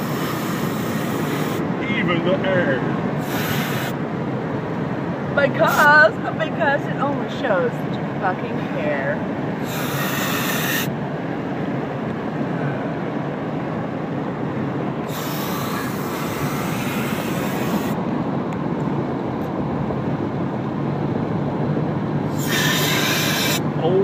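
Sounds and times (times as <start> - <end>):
compressed air spray hiss: 0.0 - 1.6, 3.2 - 4.0, 5.7 - 5.9, 9.6 - 10.9, 15.1 - 18.0, 22.3 - 23.6.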